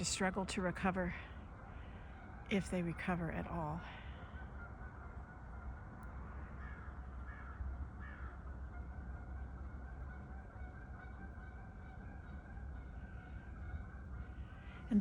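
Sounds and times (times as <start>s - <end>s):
bird calling: 1.6s - 15.0s.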